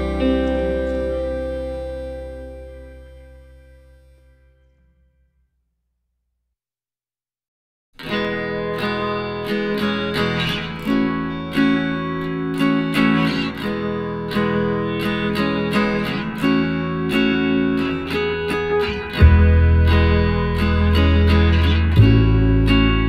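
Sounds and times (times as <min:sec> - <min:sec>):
acoustic guitar strumming chords: 0:00.0 - 0:04.5, 0:08.0 - 0:23.0
deep bass: 0:00.0 - 0:04.7, 0:19.2 - 0:23.0.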